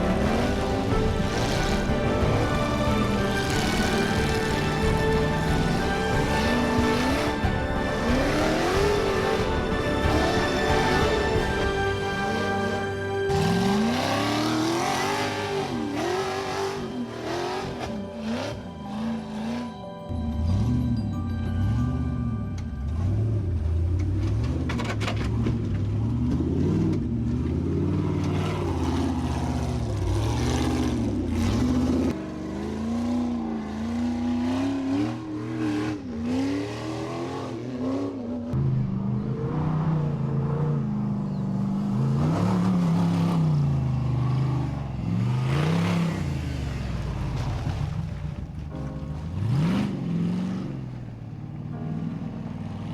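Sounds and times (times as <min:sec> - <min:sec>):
vehicle engine revving: 0:00.0 - 0:21.0, 0:21.6 - 0:52.9.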